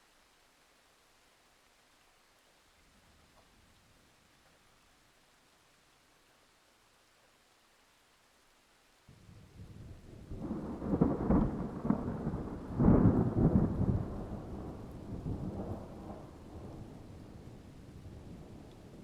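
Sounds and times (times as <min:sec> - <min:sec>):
thunder clap rumbling: 0:09.7 - 0:17.4.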